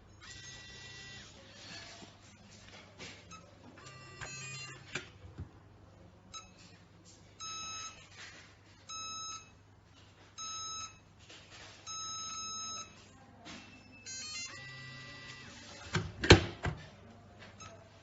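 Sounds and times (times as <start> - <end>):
electronic lock beeping: 3.3 - 5.2, 11.9 - 13.0, 13.8 - 16.1.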